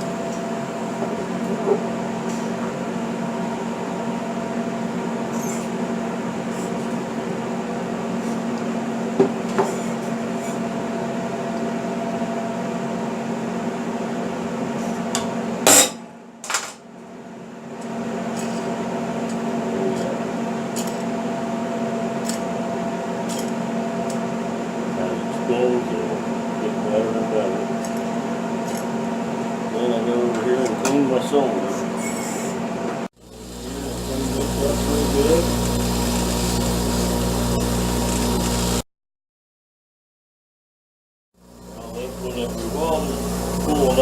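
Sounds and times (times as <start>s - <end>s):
steady machine hum: 0.0s - 38.8s, 41.4s - 44.0s.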